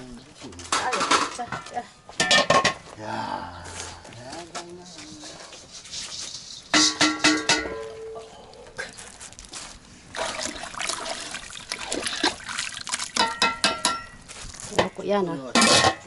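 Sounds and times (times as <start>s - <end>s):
dishes and cutlery clinking: 0.6s - 2.8s, 6.7s - 8.3s, 13.2s - 16.0s
liquid pouring and splashing: 8.9s - 14.7s.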